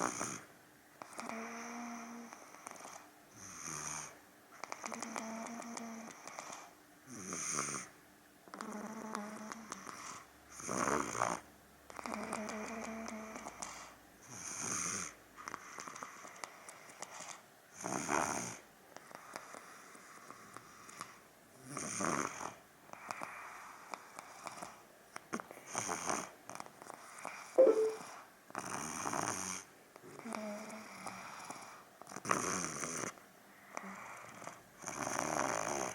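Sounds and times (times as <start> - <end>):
toddler snoring: 0.0 - 0.5, 1.1 - 16.4, 17.8 - 24.7, 28.8 - 35.9
short sharp sound: 27.6 - 28.1.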